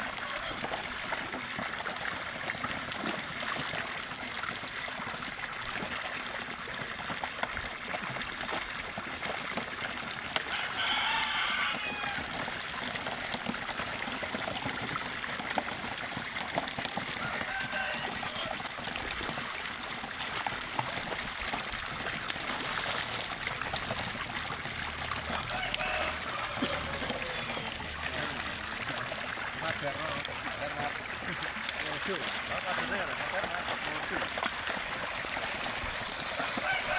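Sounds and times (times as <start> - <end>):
faint fowl calls: 0.0 - 0.9, 10.5 - 12.4, 17.2 - 18.6, 25.3 - 29.6, 35.6 - 36.9
water running into a pond: 0.0 - 36.9
rooster crowing: 10.5 - 12.3, 17.2 - 18.6, 25.3 - 27.9, 36.2 - 36.9.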